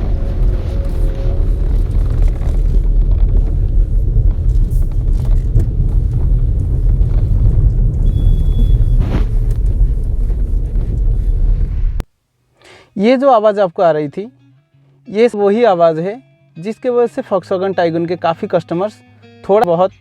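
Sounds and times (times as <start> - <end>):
door rubber squeaks and creaks: 0.0 - 12.0
road and engine rumble: 0.0 - 12.1.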